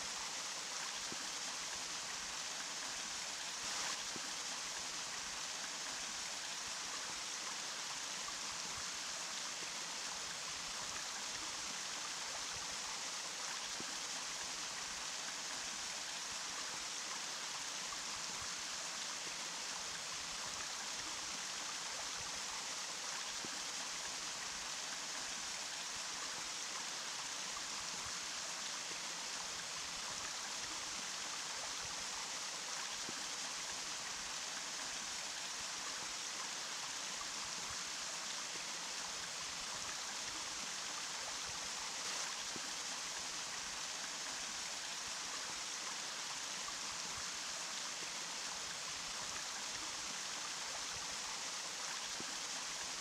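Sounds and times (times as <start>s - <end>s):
rushing water: 0.0s - 53.0s.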